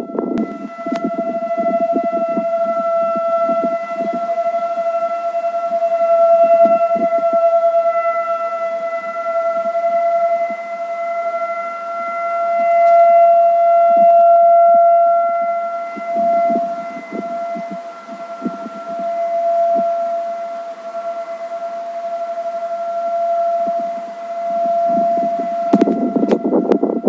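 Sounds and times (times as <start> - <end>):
electronic siren steady tone: 0.0 - 27.0.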